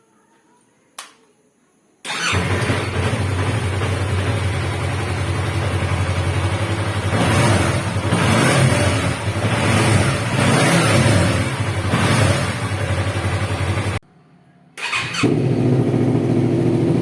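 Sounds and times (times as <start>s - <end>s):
single click: 1.0s - 1.3s
motorcycle engine idling: 2.2s - 10.4s, 11.3s - 14.0s, 14.8s - 17.0s.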